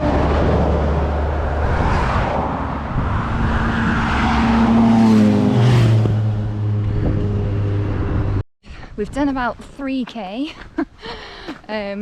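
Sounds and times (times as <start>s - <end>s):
vehicle passing close by: 0.0s - 8.4s.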